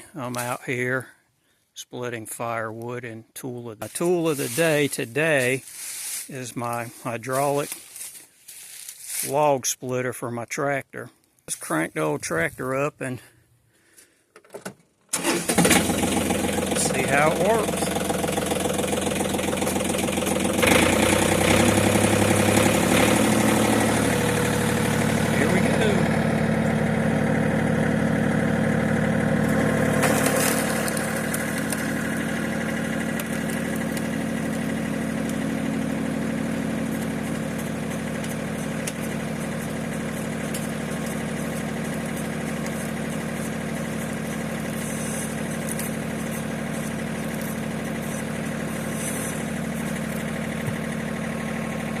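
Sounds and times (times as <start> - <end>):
tractor engine running: 0.0 - 1.0, 2.3 - 9.6, 11.5 - 13.3, 15.1 - 52.0.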